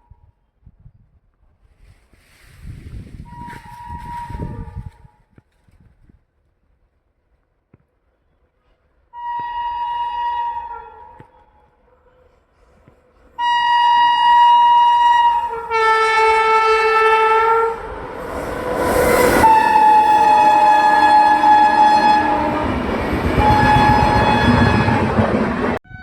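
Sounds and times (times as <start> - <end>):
locomotive horn blasts: 3.3 - 5.0, 9.2 - 11.6, 13.4 - 17.9, 18.6 - 26.0
train running past rumble: 8.2 - 26.0.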